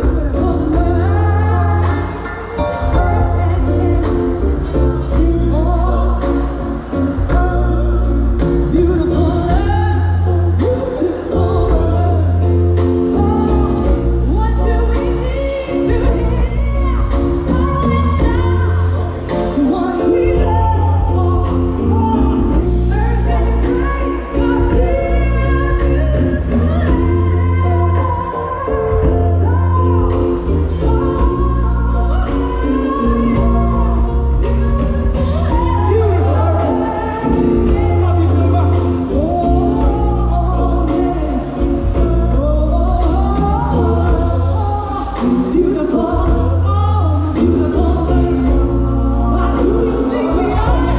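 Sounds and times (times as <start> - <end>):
band accompaniment: 0.0 - 50.9
choir singing: 47.4 - 50.9.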